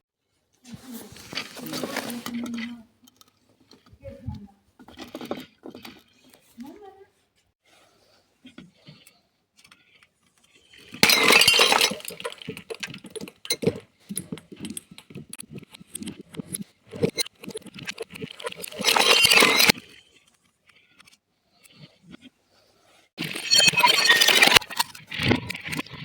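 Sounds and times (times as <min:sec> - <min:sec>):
glass pieces clinking: 0:10.8 - 0:15.1, 0:17.0 - 0:19.9, 0:23.2 - 0:25.0
glass bottle smashing: 0:10.9 - 0:13.6, 0:17.0 - 0:19.8, 0:23.2 - 0:24.9.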